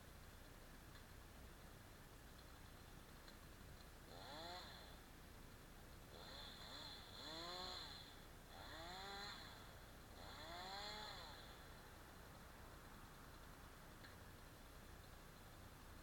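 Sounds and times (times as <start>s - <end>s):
faint chainsaw revving: 4.0s - 5.1s, 6.0s - 12.3s.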